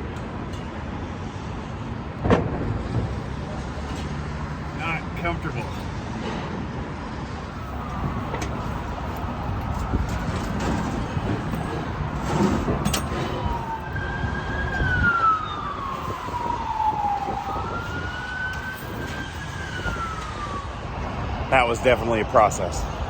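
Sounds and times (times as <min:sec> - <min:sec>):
siren wailing: 0:07.4 - 0:22.0.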